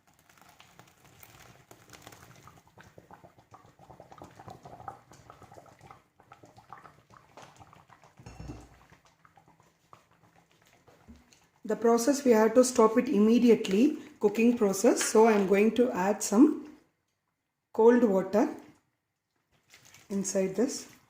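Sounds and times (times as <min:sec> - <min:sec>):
whey splattering and draining: 0:00.0 - 0:12.7, 0:19.4 - 0:21.0.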